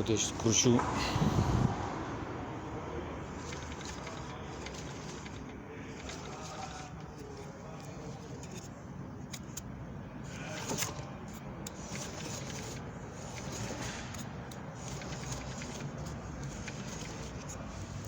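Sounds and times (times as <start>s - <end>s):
motor whirring: 3.2s - 8.7s, 10.2s - 18.0s.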